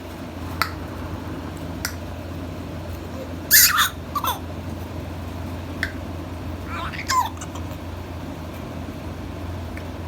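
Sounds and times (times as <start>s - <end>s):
steady low hum: 0.0s - 10.0s
baby squealing: 3.5s - 4.4s, 6.7s - 7.8s.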